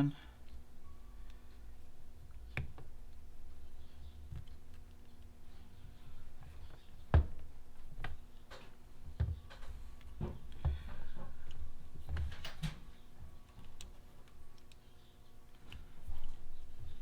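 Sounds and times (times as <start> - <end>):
small parts clicking and tapping: 7.8 - 17.0.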